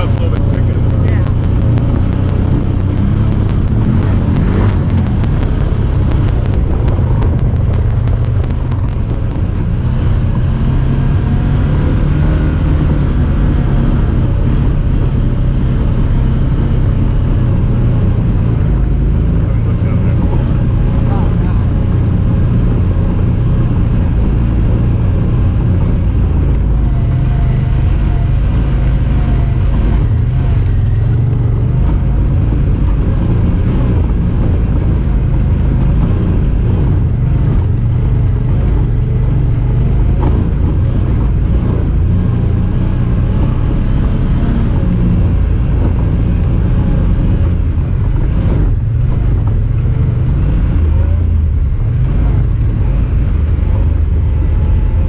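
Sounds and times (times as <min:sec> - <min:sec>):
vehicle engine low drone: 0:00.0 - 0:55.0.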